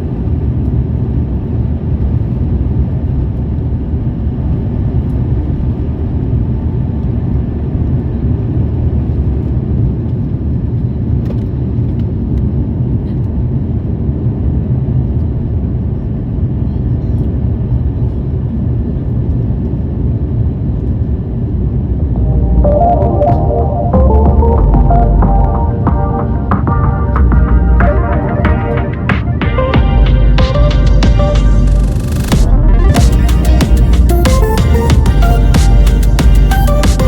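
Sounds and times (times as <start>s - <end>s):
airliner cabin engine rumble: 0.0s - 36.6s.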